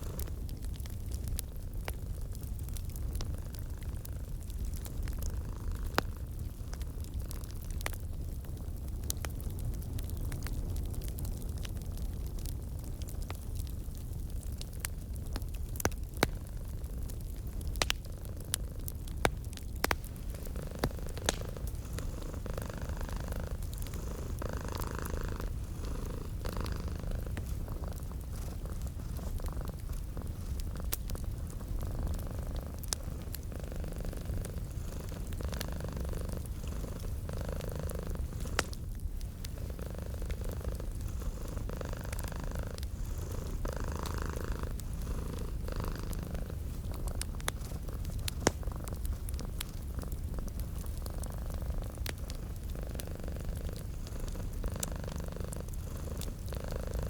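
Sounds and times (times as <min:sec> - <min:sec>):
cat purring: 0:00.0 - 0:11.6, 0:12.2 - 0:57.0
wood fire crackling and popping: 0:00.0 - 0:57.0.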